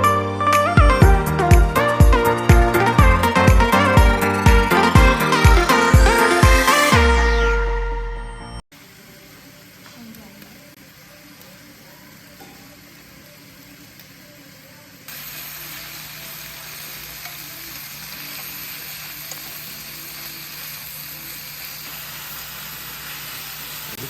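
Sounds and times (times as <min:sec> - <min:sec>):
food sizzling in a pan: 0:08.7 - 0:24.0.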